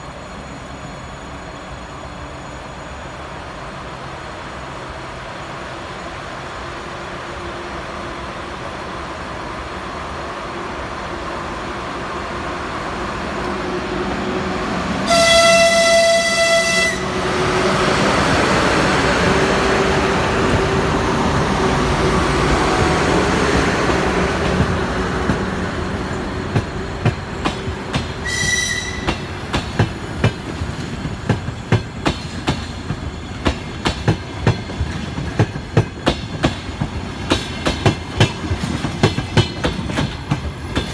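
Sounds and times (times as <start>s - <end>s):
train running rumble: 0.0s - 40.9s
train horn blast: 15.0s - 17.9s, 28.2s - 29.3s.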